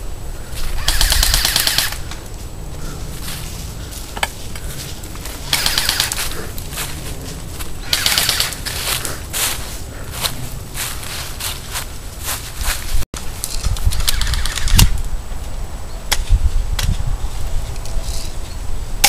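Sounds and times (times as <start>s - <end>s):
low wind rumble: 0.0s - 19.0s
airsoft guns firing: 0.8s - 2.0s, 5.5s - 6.3s, 7.8s - 8.8s.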